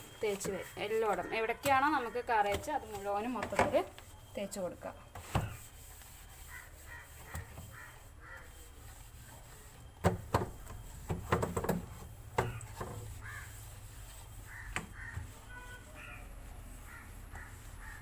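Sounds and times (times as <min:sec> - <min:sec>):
crows cawing: 0:06.5 - 0:08.6, 0:12.4 - 0:13.6, 0:14.4 - 0:15.3, 0:16.9 - 0:18.0
handling clicks and knocks: 0:10.0 - 0:13.1.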